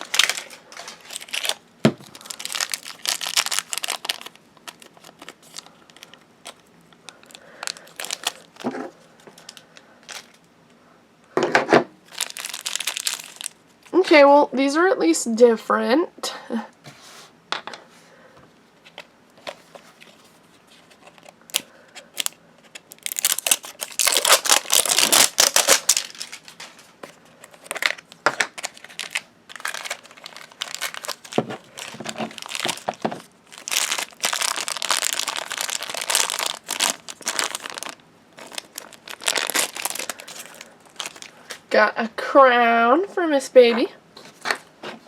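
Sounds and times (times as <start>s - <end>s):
plastic bags crinkling: 0.0s - 10.5s, 12.0s - 14.1s, 19.4s - 41.8s.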